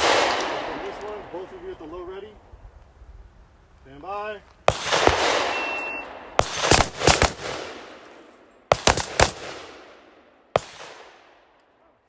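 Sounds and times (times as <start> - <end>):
echoing gunshots: 0.0 - 2.2, 4.6 - 11.6.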